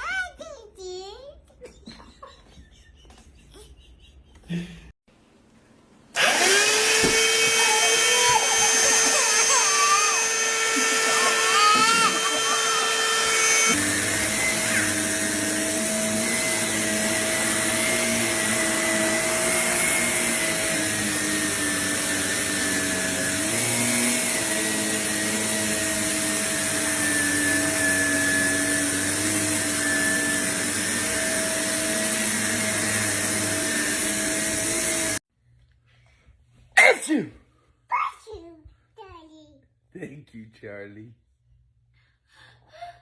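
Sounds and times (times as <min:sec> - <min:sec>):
motor appliance whining: 0:06.1 - 0:35.2.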